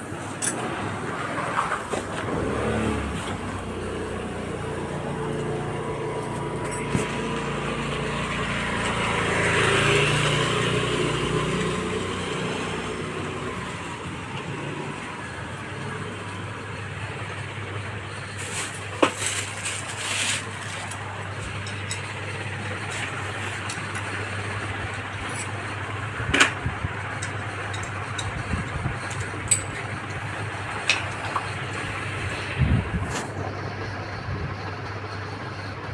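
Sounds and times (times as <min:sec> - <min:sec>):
sharp clicks and clinks: 0:06.6 - 0:07.2, 0:20.8 - 0:22.1, 0:26.3 - 0:30.2.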